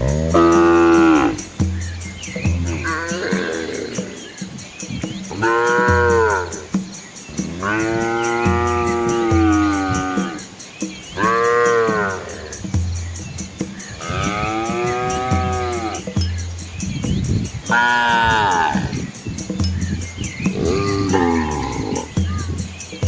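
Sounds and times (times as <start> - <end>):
cows mooing: 0.0 - 1.5, 2.6 - 4.3, 5.3 - 6.7, 7.3 - 10.5, 11.2 - 12.6, 13.9 - 16.1, 17.7 - 19.0, 20.5 - 22.1.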